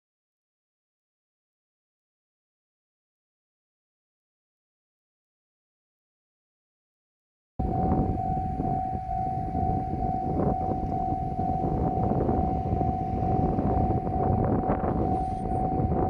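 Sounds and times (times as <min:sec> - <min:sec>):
level-crossing alarm tone: 0:07.6 - 0:16.0.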